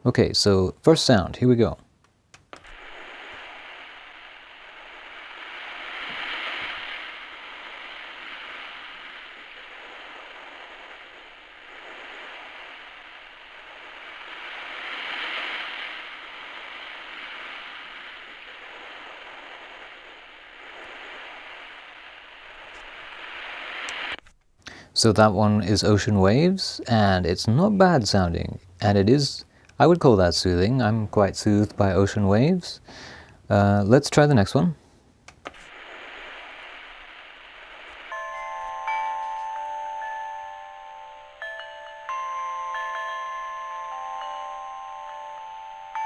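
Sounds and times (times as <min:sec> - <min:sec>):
surf sound through small speaker: 0:02.6 - 0:24.2, 0:35.4 - 0:46.0.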